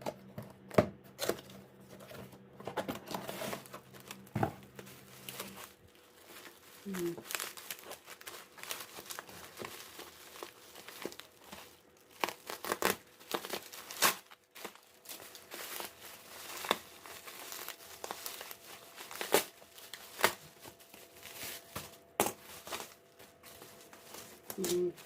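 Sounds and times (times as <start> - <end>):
packaging crinkling: 1.2 - 25.0
packaging being torn: 3.0 - 25.0.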